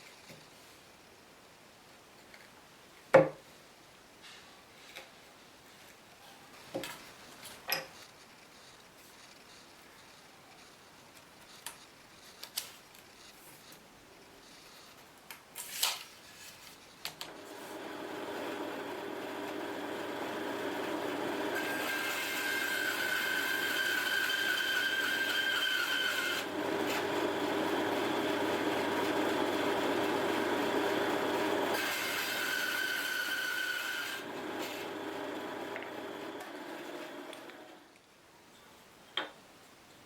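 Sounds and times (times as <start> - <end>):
power tool running on wood: 17.3 - 37.8.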